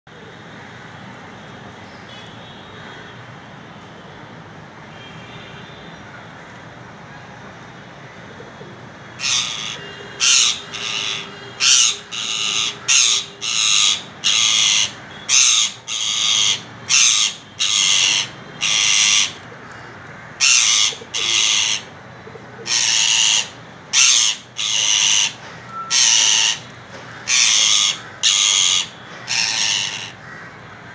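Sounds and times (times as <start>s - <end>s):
steady background hum: 8.2s - 30.9s
parrot squawking: 9.2s - 19.4s, 20.4s - 22.0s, 22.6s - 30.3s.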